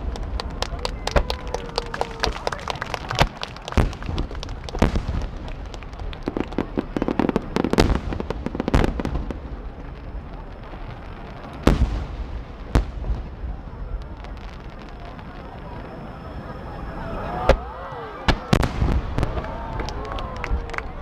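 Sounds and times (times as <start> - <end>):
fireworks bangs and crackling: 0.0 - 21.0.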